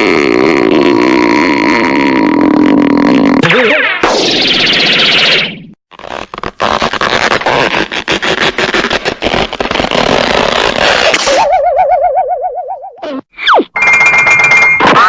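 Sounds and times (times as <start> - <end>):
warbling tone with vibrato: 11.3 - 15.0
cartoon rattling clatter: 13.8 - 15.0.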